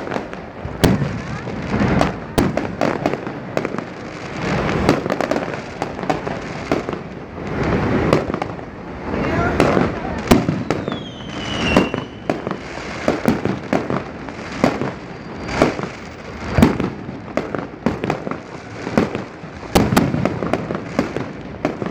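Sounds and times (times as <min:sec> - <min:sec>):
fireworks bangs and pops: 0:00.0 - 0:21.9
firework falling whistle: 0:09.7 - 0:13.8, 0:14.4 - 0:17.0.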